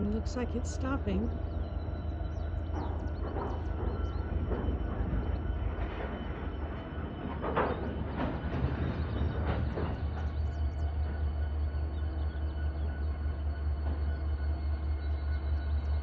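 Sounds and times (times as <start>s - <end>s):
freight train rumbling while braking: 0.0s - 16.0s
sharp noises from train cars: 2.5s - 12.3s.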